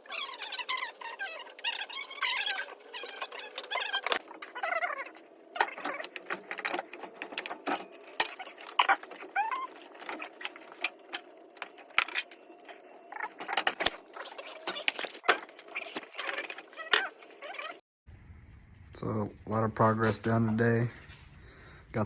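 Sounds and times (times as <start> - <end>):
hand tools clinking on metal: 5.6 - 12.4.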